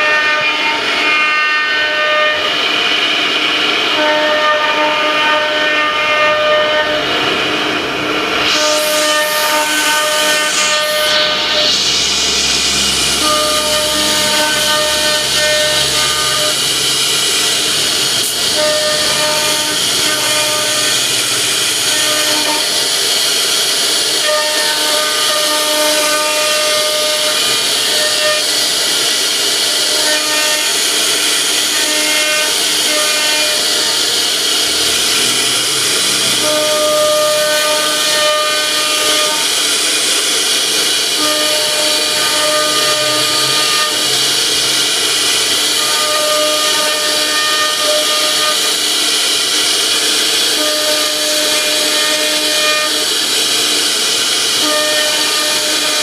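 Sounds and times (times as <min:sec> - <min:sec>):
power tool cutting wood: 0:00.0 - 0:56.0.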